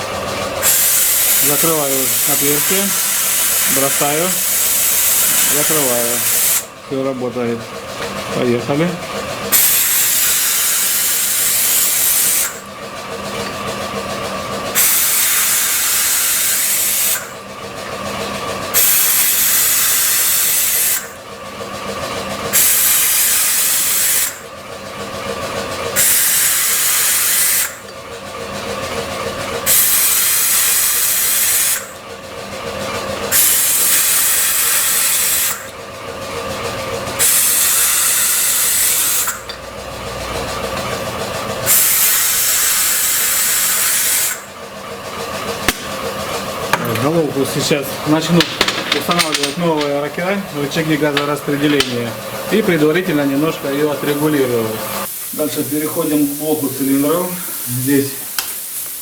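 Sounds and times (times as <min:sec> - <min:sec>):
compressed air hissing: 0:00.6 - 0:06.7, 0:09.5 - 0:12.6, 0:14.7 - 0:17.2, 0:22.5 - 0:24.4, 0:41.6 - 0:44.4, 0:50.8 - 0:59.0.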